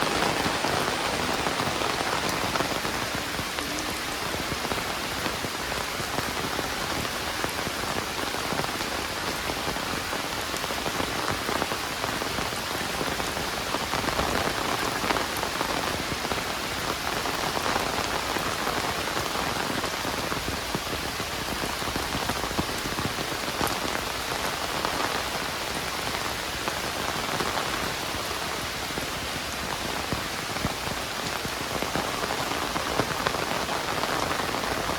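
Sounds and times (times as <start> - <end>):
raindrops ticking: 0.0 - 25.1
heavy rain falling: 0.0 - 34.9.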